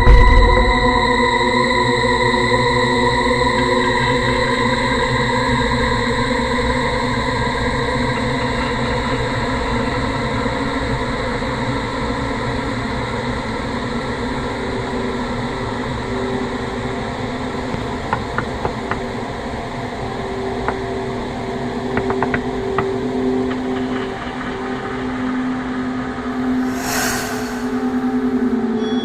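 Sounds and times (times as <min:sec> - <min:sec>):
dense rumbling drone: 0:00.0 - 0:01.7, 0:26.6 - 0:28.1.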